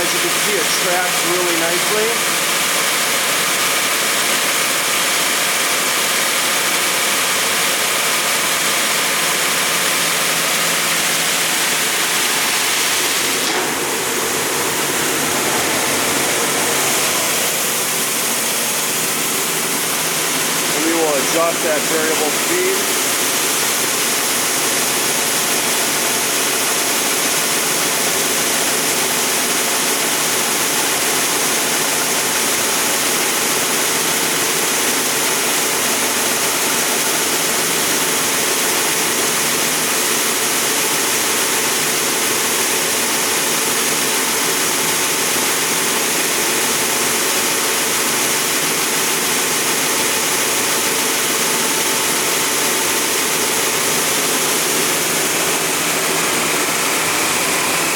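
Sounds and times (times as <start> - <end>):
belt sander hissing: 0.0 - 5.6, 6.5 - 37.8.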